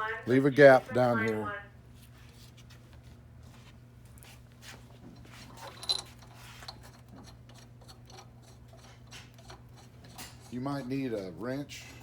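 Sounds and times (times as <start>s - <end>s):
metallic clinks of bolts and nuts: 5.6s - 7.3s.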